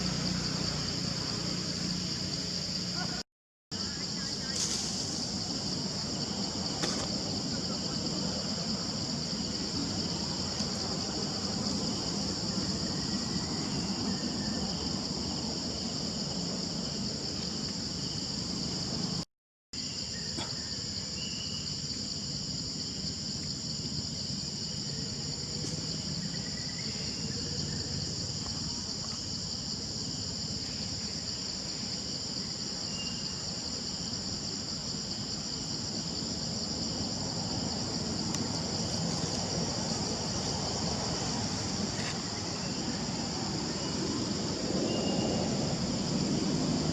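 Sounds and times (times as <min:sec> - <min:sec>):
low outdoor background hum: 0:00.0 - 0:19.2
insects droning: 0:00.0 - 0:46.9.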